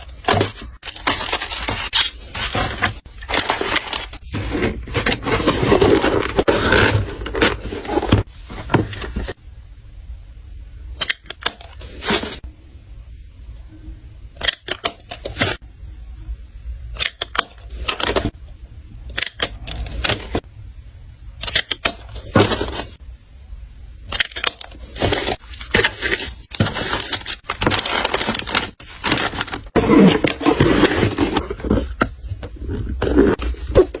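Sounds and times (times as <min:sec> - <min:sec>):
packaging crinkling and rustling: 0:00.0 - 0:09.4, 0:24.1 - 0:34.0.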